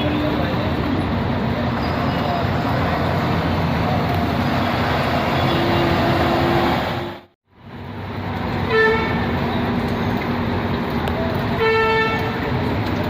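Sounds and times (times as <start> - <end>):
heavy rain: 0.0 - 13.0
road traffic: 0.0 - 13.0
vehicle horn toot: 5.3 - 6.5.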